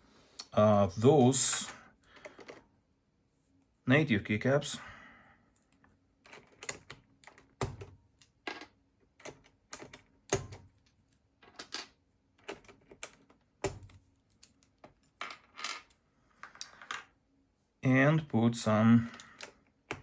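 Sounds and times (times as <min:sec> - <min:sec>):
keycaps clicking and popping: 0:09.0 - 0:10.8.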